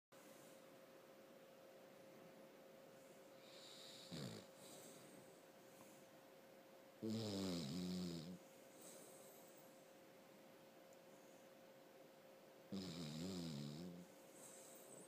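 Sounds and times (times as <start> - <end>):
snoring: 3.4 - 4.9, 7.0 - 8.4, 12.7 - 15.0.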